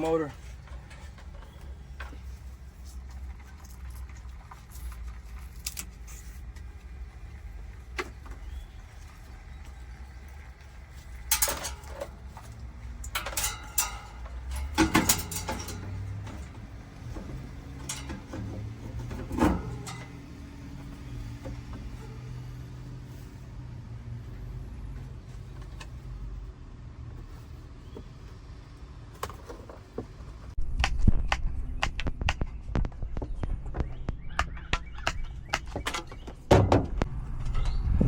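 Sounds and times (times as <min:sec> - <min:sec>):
metal tools clinking: 0:11.2 - 0:20.3
knocks and rattles: 0:11.2 - 0:22.3, 0:29.2 - 0:38.0
low steady hum: 0:30.4 - 0:38.0
low hum with a tone: 0:36.5 - 0:38.0.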